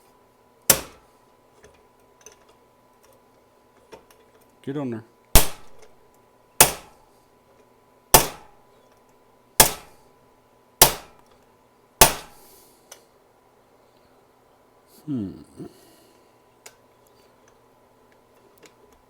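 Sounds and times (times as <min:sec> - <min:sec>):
hammer tapping on metal: 0:00.7 - 0:01.0, 0:08.2 - 0:08.6, 0:09.6 - 0:10.0, 0:10.8 - 0:11.2, 0:12.0 - 0:12.4.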